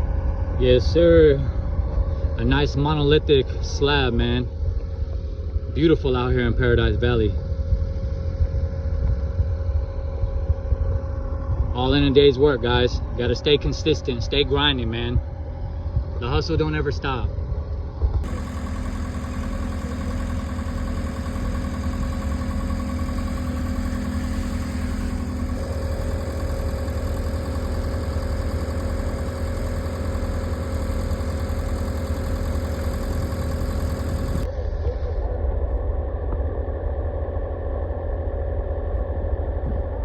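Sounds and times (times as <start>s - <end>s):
heavy machinery engine droning: 18.2s - 34.5s.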